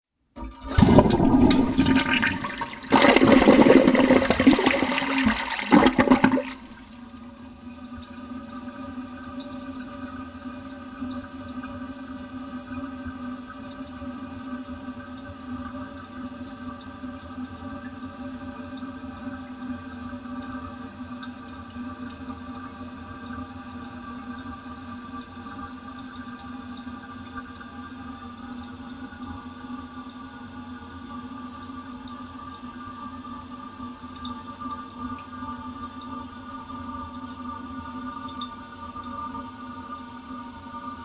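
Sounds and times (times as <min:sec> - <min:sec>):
toilet cistern refilling: 0:00.4 - 0:08.4.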